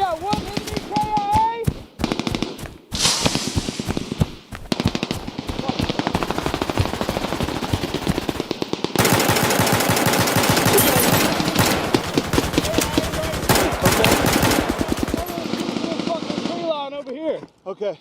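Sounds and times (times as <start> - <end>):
machine-gun bursts: 4.7 - 16.5.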